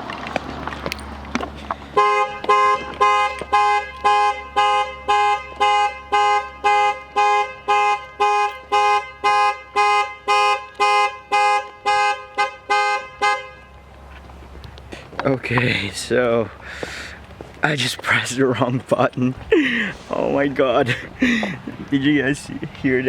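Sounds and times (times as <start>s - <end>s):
car alarm two-tone honking: 2.0s - 13.9s.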